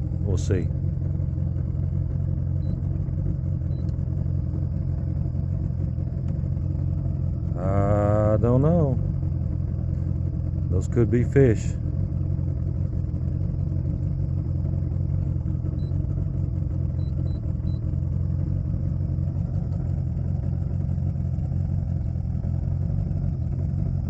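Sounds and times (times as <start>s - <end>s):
boat motor running: 0.0s - 24.0s
faint high beeps: 2.6s - 2.8s.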